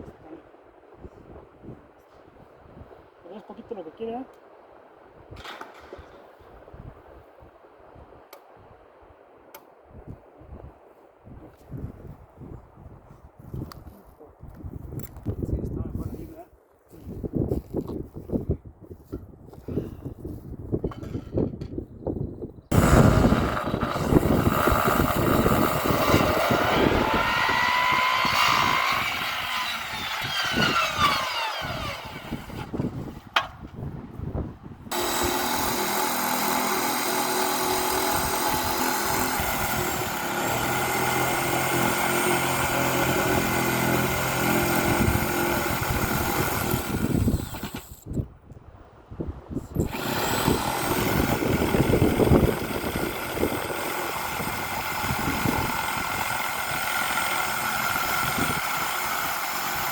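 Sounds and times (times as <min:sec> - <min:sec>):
motor running: 0:22.7 - 0:32.9, 0:34.9 - 0:48.0, 0:49.8 - 0:59.9.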